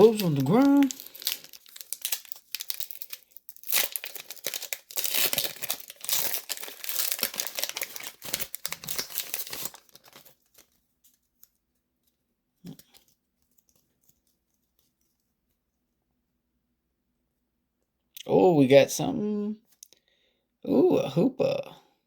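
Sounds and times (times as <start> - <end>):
foil wrapper crinkling and tearing: 0.0 - 11.6.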